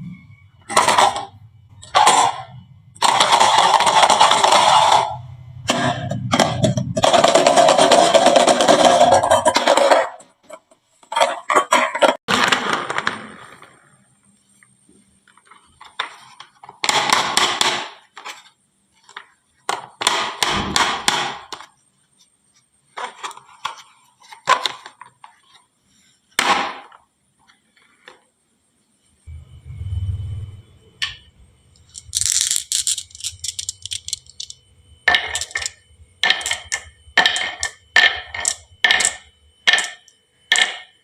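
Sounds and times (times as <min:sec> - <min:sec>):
glass marbles clattering down wood: 0:31.8 - 0:40.8.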